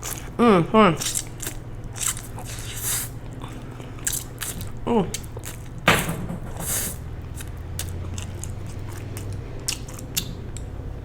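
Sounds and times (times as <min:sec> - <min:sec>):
quiet chewing: 0:00.0 - 0:05.8, 0:07.4 - 0:10.8.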